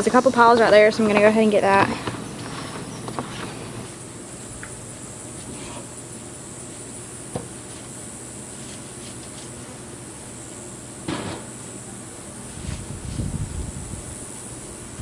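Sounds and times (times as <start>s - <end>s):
high insect buzz: 0.0s - 15.0s
loud clunk: 11.0s - 11.5s.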